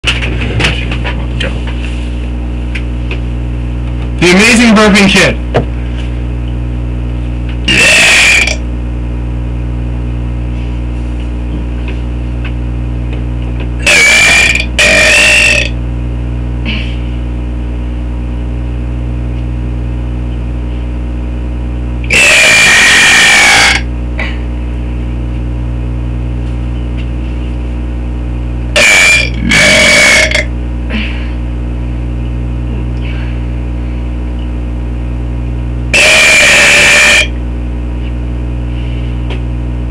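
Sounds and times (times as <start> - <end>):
steady loud hum: 0.0 - 39.9
child belching loudly: 7.7 - 8.6, 13.8 - 15.8, 22.1 - 23.9, 28.8 - 30.5, 36.0 - 37.3.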